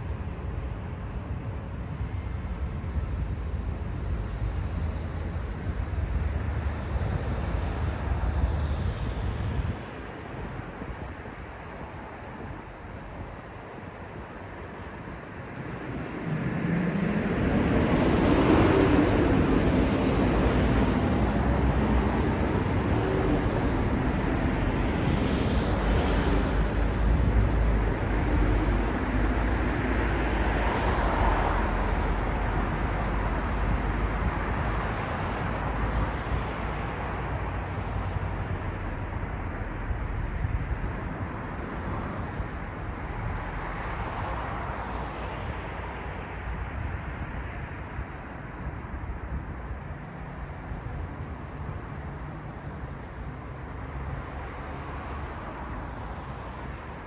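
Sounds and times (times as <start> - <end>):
vehicles passing close by: 14.9 - 57.0.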